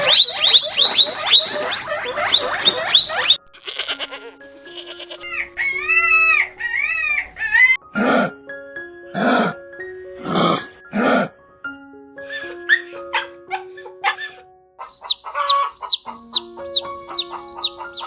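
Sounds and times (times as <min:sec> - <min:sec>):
rapid high chirps: 0:00.0 - 0:03.4, 0:12.3 - 0:18.0
long loud animal call: 0:00.0 - 0:03.9, 0:12.2 - 0:18.0
background music: 0:00.0 - 0:18.0.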